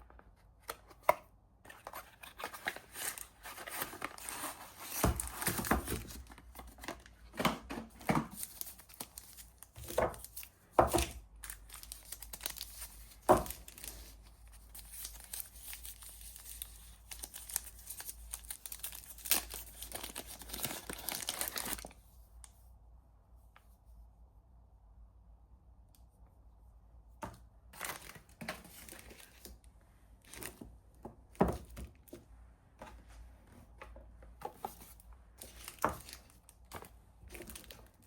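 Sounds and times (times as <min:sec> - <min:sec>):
wrapper crinkling and tearing: 0:11.4 - 0:22.0, 0:27.8 - 0:29.3, 0:37.3 - 0:38.0.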